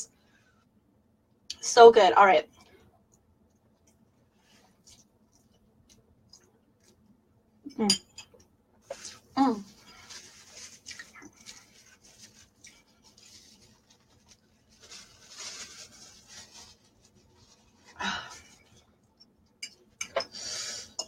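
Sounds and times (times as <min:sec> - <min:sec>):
person chewing: 0:04.7 - 0:07.1.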